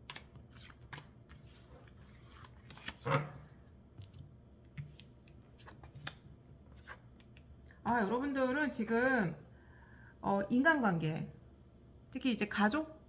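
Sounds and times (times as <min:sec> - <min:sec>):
cards clicking and rustling: 0:00.0 - 0:03.2.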